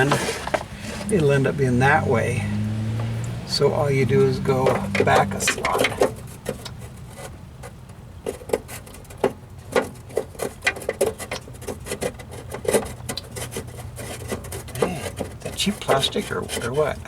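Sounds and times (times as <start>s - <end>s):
plastic clicks and scrapes: 4.7s - 17.0s.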